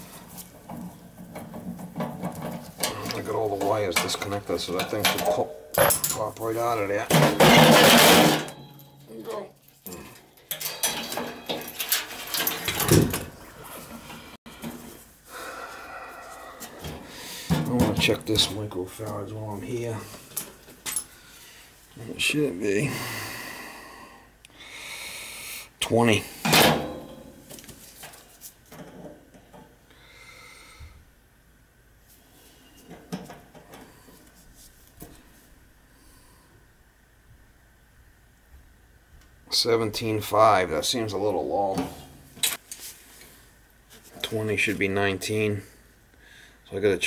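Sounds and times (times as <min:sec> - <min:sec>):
sheet metal clattering and scraping: 0:00.4 - 0:06.4, 0:07.0 - 0:09.1, 0:10.2 - 0:13.4.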